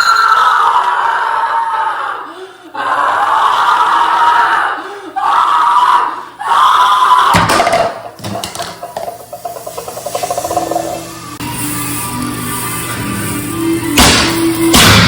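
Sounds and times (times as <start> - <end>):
sharp clattering knocks: 7.4 - 11.1.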